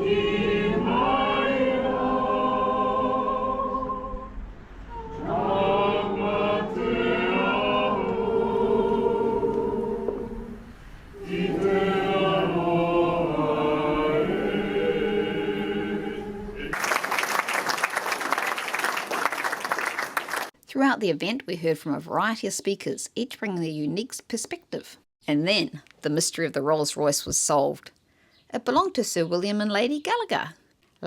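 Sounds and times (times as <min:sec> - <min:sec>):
opera singers singing: 0:00.0 - 0:16.8.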